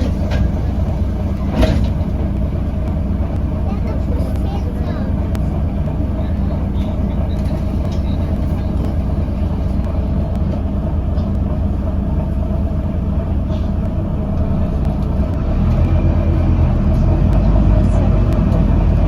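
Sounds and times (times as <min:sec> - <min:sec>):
bus engine drone: 0:00.0 - 0:19.0
mid-pitched hum: 0:00.0 - 0:19.0.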